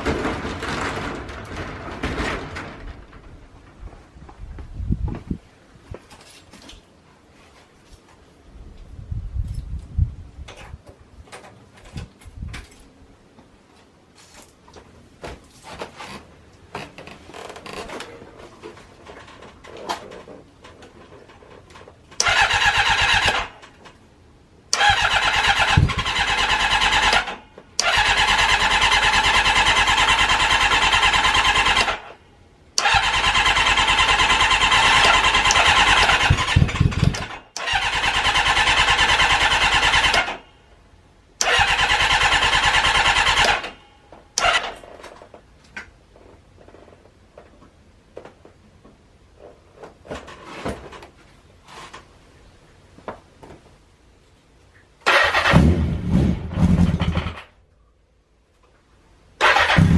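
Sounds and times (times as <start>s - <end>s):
motorcycle engine cranking: 21.7s - 24.0s, 24.7s - 32.2s, 32.8s - 40.4s, 41.4s - 43.8s, 44.4s - 45.3s, 55.0s - 57.6s, 59.4s - 59.9s.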